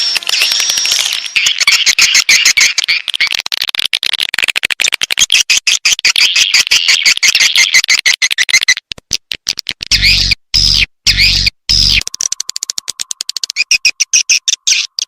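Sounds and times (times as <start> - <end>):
recorded swiftlet twittering: 0.0 - 3.4, 9.9 - 15.0.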